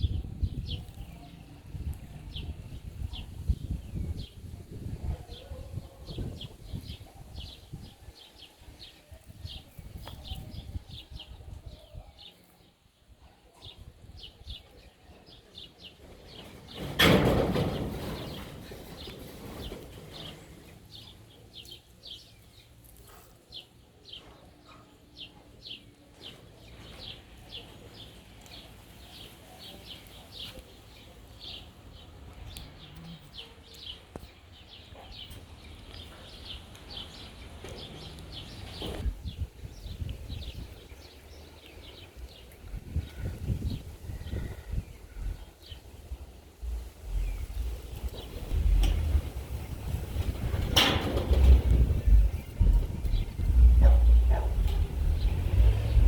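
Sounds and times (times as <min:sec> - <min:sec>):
small birds chirping: 0:18.0 - 0:56.0
low background rumble: 0:42.2 - 0:56.0.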